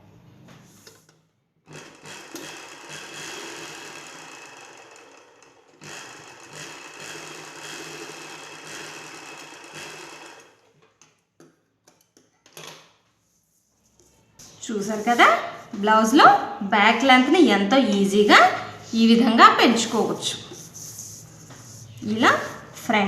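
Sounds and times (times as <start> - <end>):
sewing machine stitching: 1.6 - 10.8.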